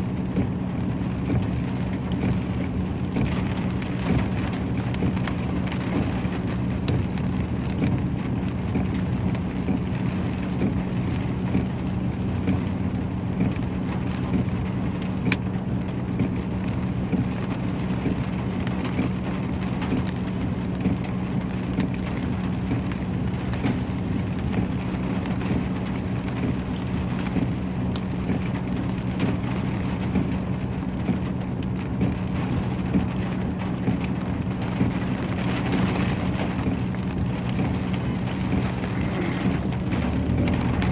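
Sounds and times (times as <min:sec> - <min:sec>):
heavy rain falling: 0:00.0 - 0:40.9
hail clicking: 0:13.4 - 0:40.9.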